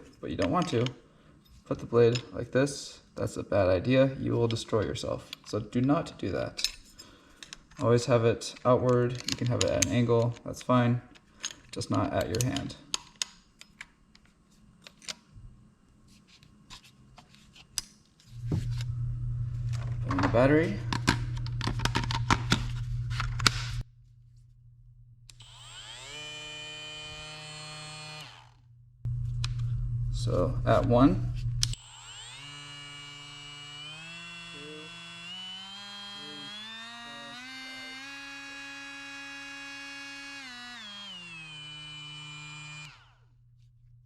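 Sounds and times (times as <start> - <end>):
tool handling clicks: 8.5 - 15.2
power tool motor whine: 25.3 - 28.6, 31.7 - 43.3.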